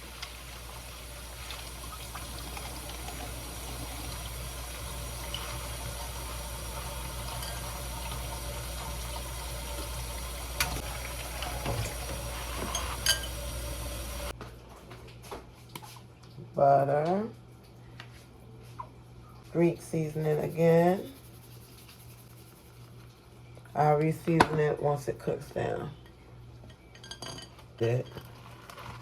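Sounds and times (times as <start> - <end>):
kitchen tap running: 0.0 - 14.3.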